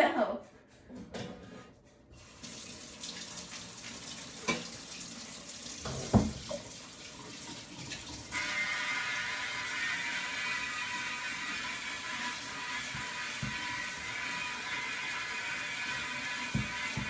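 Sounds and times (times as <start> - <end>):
tap running into sink: 2.4 - 5.0, 5.6 - 8.2, 12.8 - 14.2, 15.8 - 17.0
basket knocking against sink: 5.8 - 6.5, 16.5 - 17.0
steady hum: 8.4 - 17.0.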